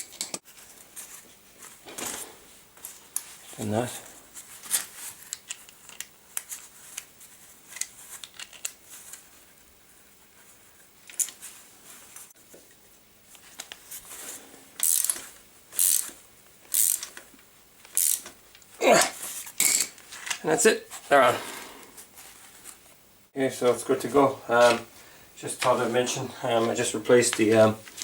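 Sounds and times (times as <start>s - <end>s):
ratchet wrench clicking: 14.8s - 15.2s, 15.8s - 16.1s, 16.7s - 17.1s, 17.9s - 18.3s.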